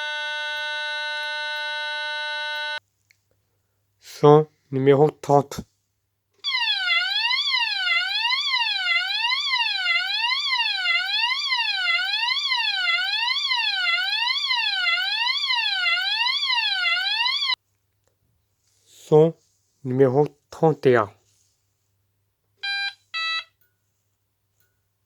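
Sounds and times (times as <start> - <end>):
fire alarm sweeping tone: 6.4 - 17.6.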